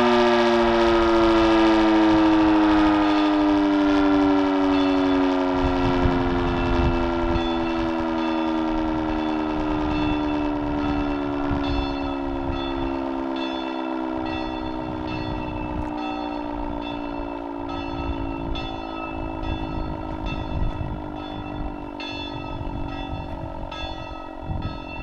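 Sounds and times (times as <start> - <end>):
rotor siren winding down: 0.0 - 25.0
high ringing strikes: 2.4 - 25.0.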